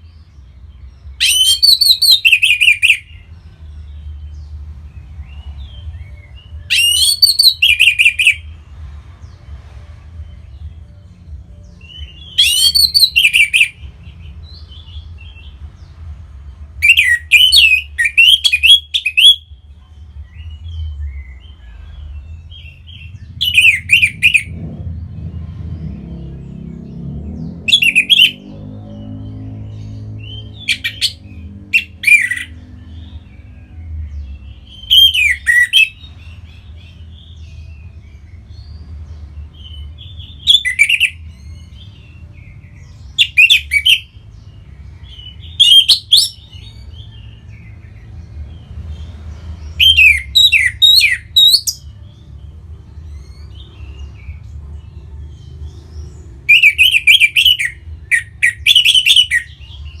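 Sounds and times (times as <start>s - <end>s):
bird singing warbled phrases: 0.0s - 8.6s, 10.2s - 60.0s
low background rumble: 19.4s - 40.4s.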